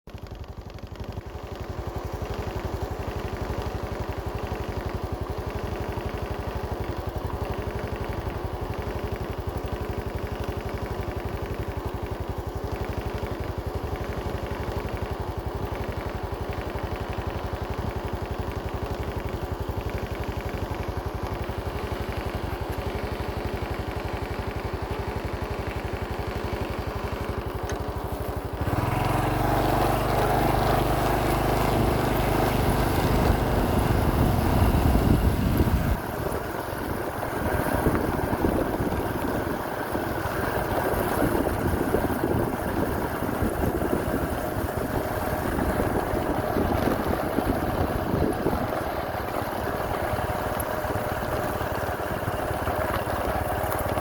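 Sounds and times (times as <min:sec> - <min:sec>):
engine running with fast pulse: 0:00.1 - 0:54.0.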